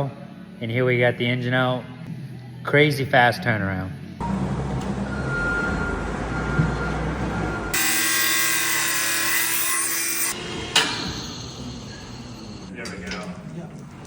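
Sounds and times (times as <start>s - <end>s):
power tool whining: 7.7s - 12.7s.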